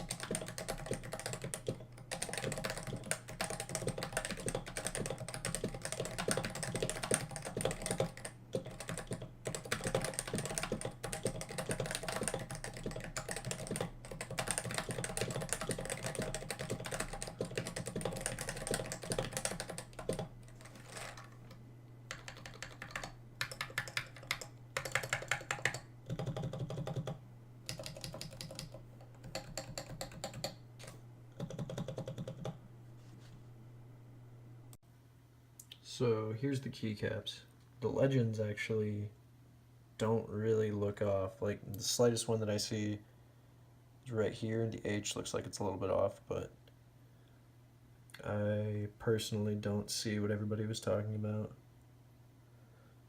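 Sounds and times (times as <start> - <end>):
fast typing on mechanical keyboard: 0.0 - 21.3, 22.1 - 30.6, 31.4 - 32.6
faint steady hum: 0.0 - 53.0.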